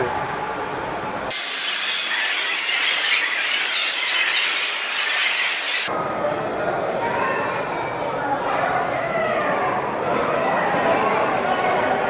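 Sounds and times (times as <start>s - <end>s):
train wheels screeching on rails: 1.3s - 5.9s.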